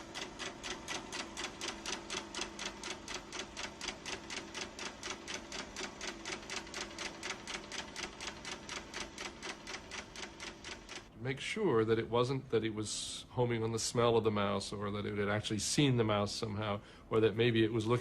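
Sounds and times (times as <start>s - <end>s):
film projector clattering: 0.0s - 11.1s
faint steady hum: 0.0s - 18.0s.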